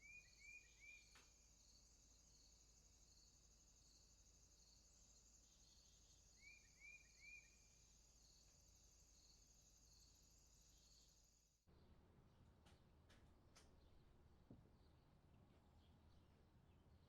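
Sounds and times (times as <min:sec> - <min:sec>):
insect chorus: 0:00.0 - 0:11.6.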